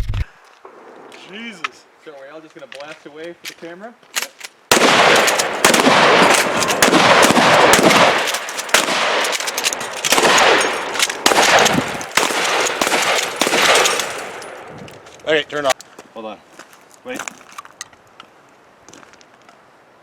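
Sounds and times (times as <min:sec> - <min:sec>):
guns firing in volley: 0:04.7 - 0:14.6.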